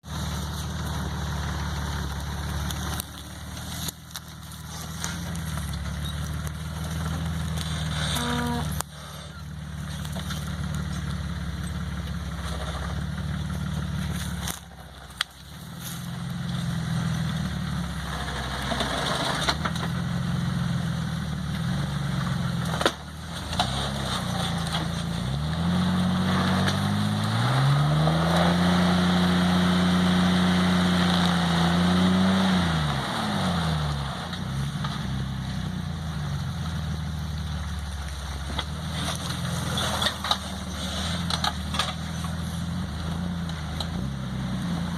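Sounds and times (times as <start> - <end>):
car engine revving: 0.0 - 44.9.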